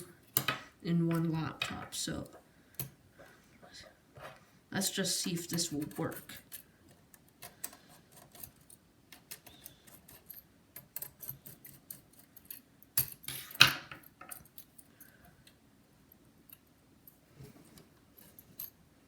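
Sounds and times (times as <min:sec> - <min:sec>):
laptop parts clicking and rattling: 0:05.4 - 0:15.6.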